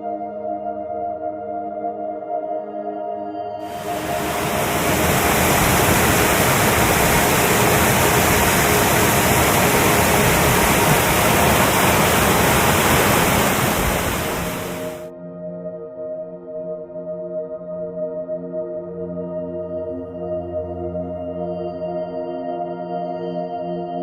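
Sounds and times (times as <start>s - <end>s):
soft ambient music: 0.0s - 24.0s
waterfall rushing: 3.7s - 15.1s.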